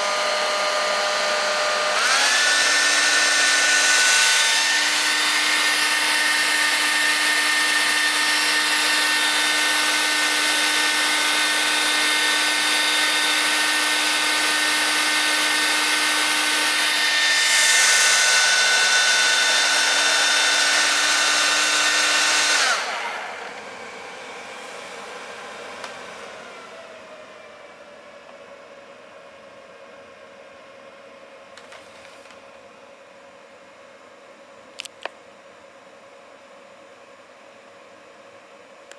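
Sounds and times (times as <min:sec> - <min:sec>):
hair dryer blowing: 0:00.0 - 0:28.4.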